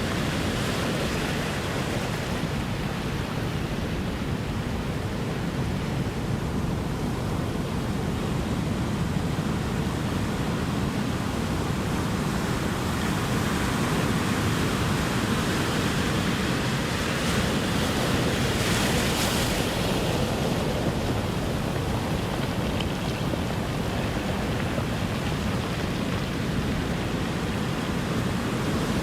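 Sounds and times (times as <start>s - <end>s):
ocean waves rushing: 0.0s - 5.4s, 12.6s - 29.0s
wave breaking on shore: 13.2s - 29.0s.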